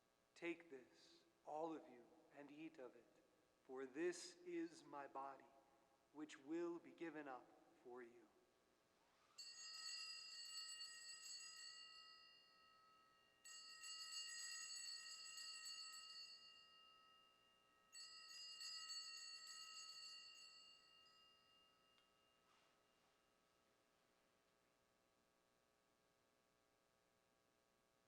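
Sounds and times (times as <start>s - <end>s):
small handbells ringing: 9.4s - 22.6s.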